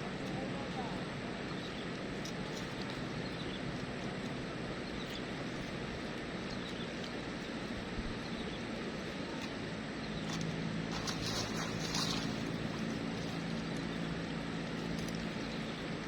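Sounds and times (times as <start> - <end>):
low engine hum: 0.0 - 16.0
outdoor background noise: 0.0 - 16.0.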